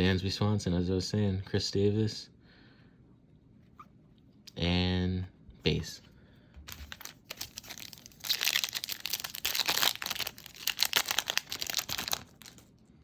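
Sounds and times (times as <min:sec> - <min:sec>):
foil wrapper crinkling: 0:06.7 - 0:12.8.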